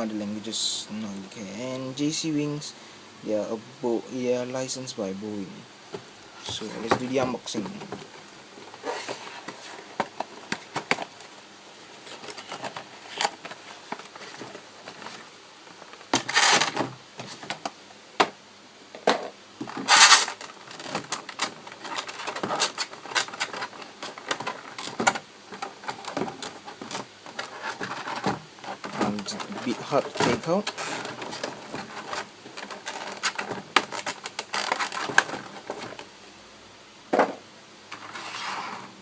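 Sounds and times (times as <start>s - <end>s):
cardboard rustling scrapes: 6.4s - 17.5s, 19.8s - 25.0s, 25.6s - 36.0s, 37.9s - 39.0s.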